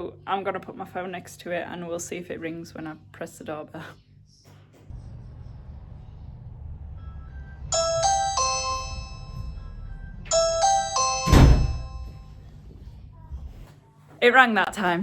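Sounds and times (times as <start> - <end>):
doorbell ding-dong chime: 7.7 - 12.4
loud thump: 11.2 - 12.2.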